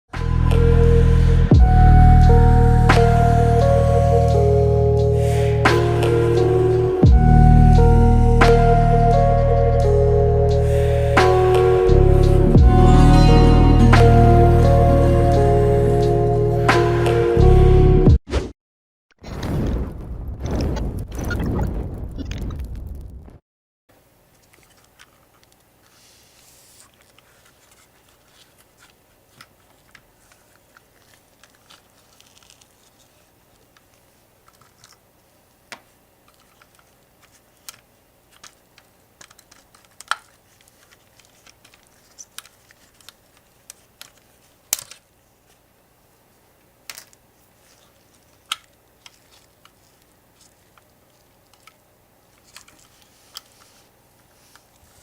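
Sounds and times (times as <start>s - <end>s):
low steady hum: 0.2s - 18.1s.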